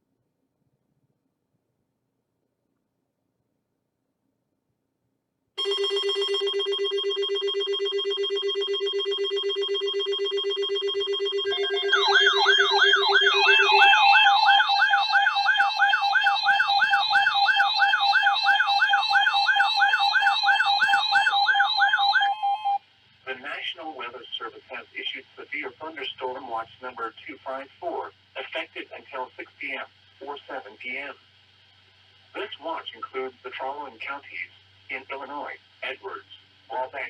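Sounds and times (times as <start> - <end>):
fast-warbling siren-like alarm: 5.6 - 22.8
loud steady buzzing tone: 7.5 - 22.9
steady higher tones: 11.4 - 22.8.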